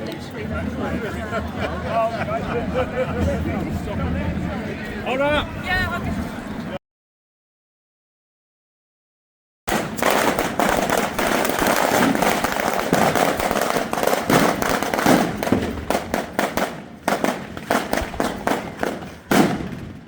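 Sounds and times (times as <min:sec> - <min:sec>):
fireworks crackling: 0:09.7 - 0:20.0.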